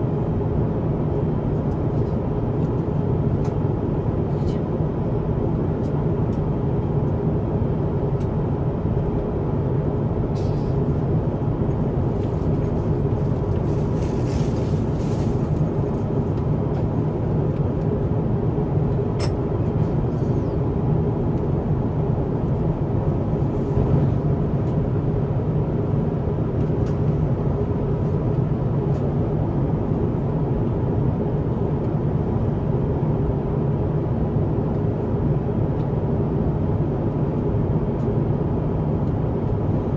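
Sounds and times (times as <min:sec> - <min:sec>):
airliner cabin engine drone: 0:00.0 - 0:39.9.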